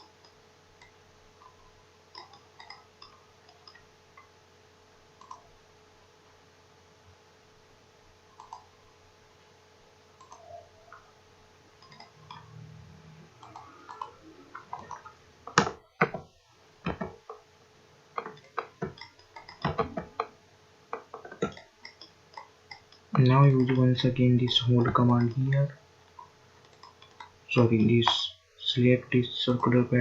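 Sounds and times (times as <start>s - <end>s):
computer mouse clicking: 0.0s - 4.3s, 5.2s - 5.5s, 8.3s - 8.8s, 10.2s - 11.1s, 11.8s - 12.6s, 13.4s - 16.2s, 18.1s - 20.3s, 20.9s - 28.3s
faint electrical hum: 0.0s - 30.0s.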